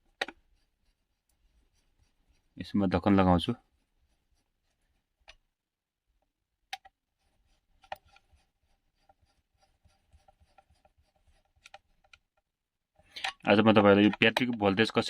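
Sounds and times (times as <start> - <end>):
plastic clicks and rubbing: 0.0 - 0.6, 11.4 - 12.5, 13.2 - 14.8.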